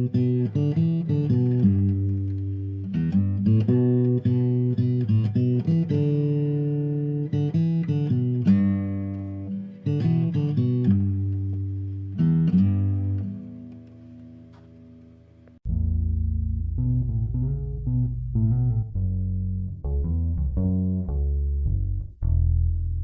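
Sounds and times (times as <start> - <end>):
plucked guitar: 0.0 - 23.0
bass line: 15.6 - 23.0.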